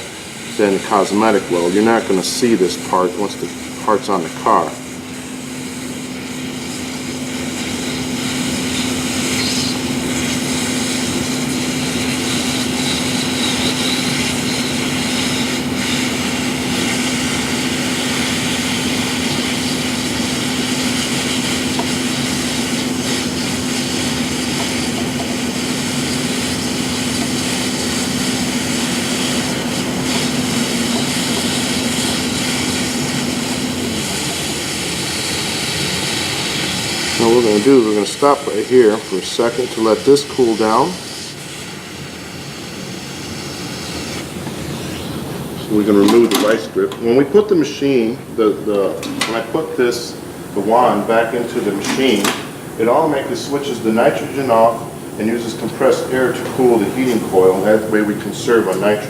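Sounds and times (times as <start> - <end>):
gas rushing from welder: 0.0 - 59.0.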